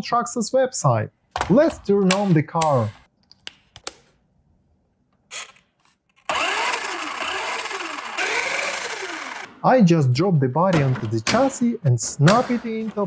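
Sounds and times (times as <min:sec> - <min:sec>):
rc truck motor whirring: 0:06.2 - 0:09.5.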